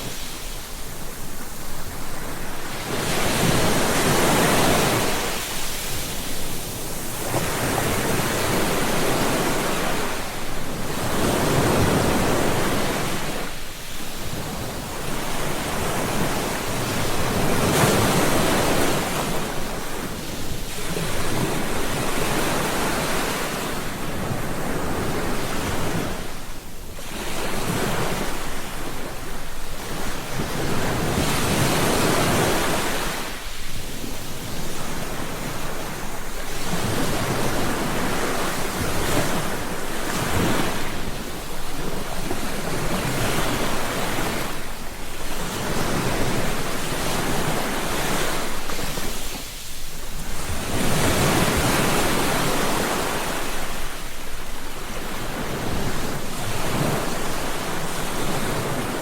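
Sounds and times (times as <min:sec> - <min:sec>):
ocean waves breaking on beach: 0:00.0 - 0:59.0.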